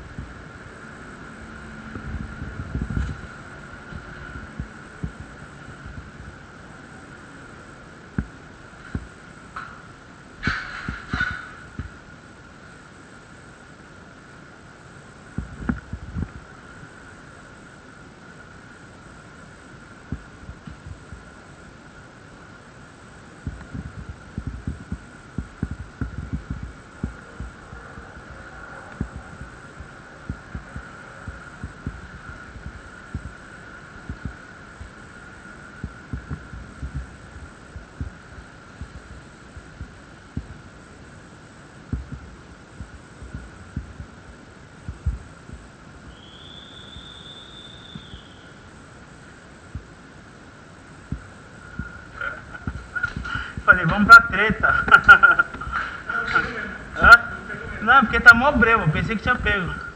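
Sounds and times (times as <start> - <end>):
faint high whine: 0.0 - 59.9
faint steady hum: 0.0 - 59.9
rushing noise: 0.0 - 59.9.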